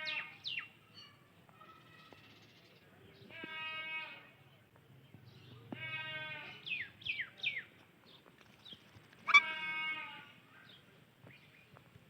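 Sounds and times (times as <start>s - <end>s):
parakeet squawking: 9.3s - 9.5s.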